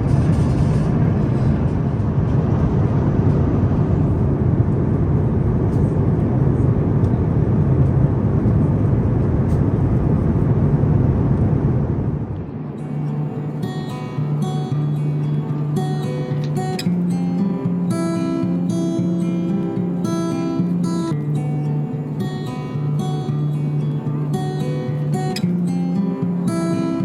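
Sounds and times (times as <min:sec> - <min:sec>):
rush of air: 0:00.0 - 0:12.8
low engine drone: 0:00.0 - 0:21.2.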